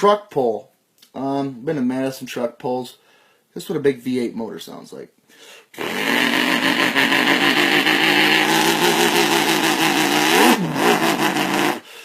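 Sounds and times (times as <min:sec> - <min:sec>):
man imitating engine sound: 0:05.8 - 0:11.9.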